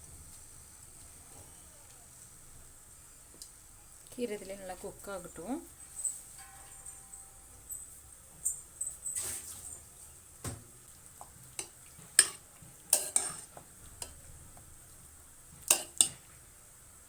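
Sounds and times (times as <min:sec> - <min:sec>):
spoon knocking and scraping pot: 0:05.8 - 0:09.6, 0:11.2 - 0:14.8, 0:15.6 - 0:16.3.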